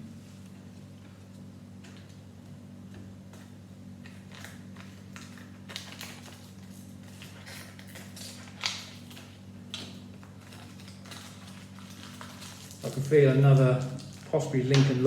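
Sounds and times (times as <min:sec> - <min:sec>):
steady low hum: 0:00.0 - 0:15.0
plastic packaging rustling: 0:04.0 - 0:15.0.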